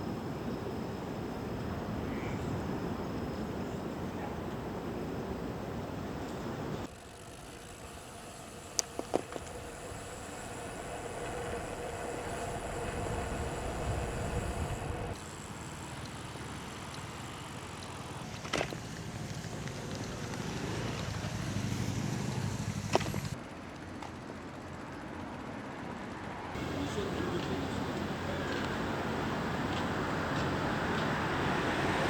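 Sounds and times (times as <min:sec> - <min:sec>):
wind and tyre rush: 0:00.0 - 0:07.0, 0:07.7 - 0:15.4, 0:18.8 - 0:23.4, 0:26.5 - 0:32.0.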